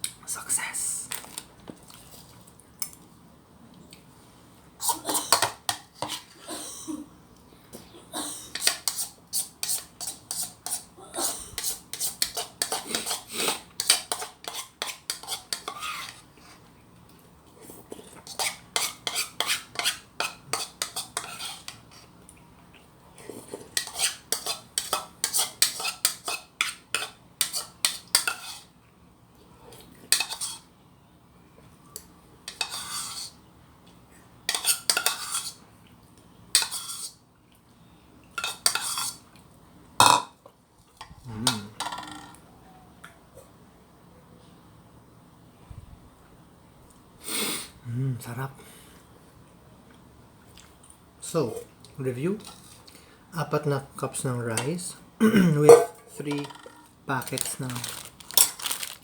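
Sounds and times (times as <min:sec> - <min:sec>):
spoon scraping a pot: 0:04.8 - 0:06.4, 0:08.5 - 0:10.9, 0:11.5 - 0:16.6, 0:18.2 - 0:22.1, 0:23.7 - 0:28.7, 0:30.1 - 0:30.7, 0:32.5 - 0:33.4, 0:34.5 - 0:35.6, 0:36.6 - 0:37.2, 0:38.4 - 0:39.2.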